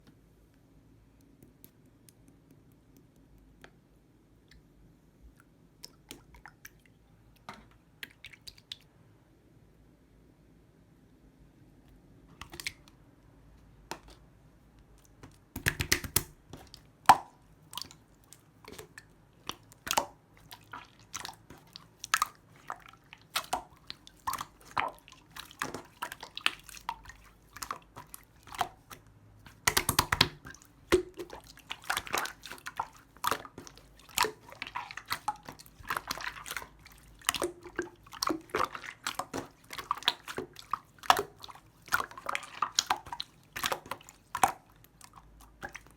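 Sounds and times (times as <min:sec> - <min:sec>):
slime squished by hand: 0:13.9 - 0:45.9.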